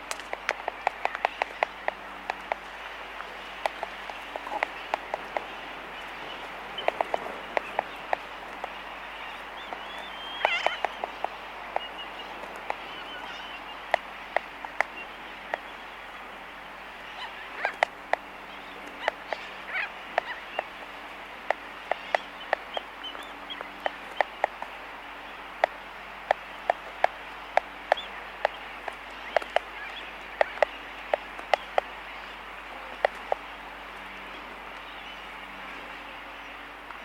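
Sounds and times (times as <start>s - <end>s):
albatrosses clacking bills: 0.0s - 15.7s
distant seabird colony din: 0.0s - 37.0s.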